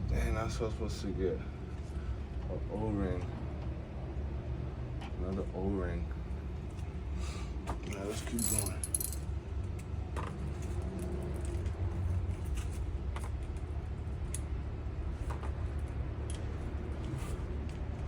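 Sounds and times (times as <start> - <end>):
steady low hum: 0.0 - 10.2
hand tools clicking and tapping: 8.4 - 9.2.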